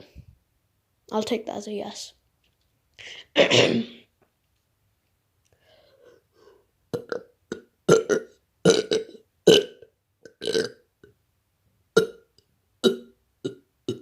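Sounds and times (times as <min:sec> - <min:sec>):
person burping: 0:03.2 - 0:04.1, 0:06.9 - 0:10.9, 0:12.0 - 0:14.0.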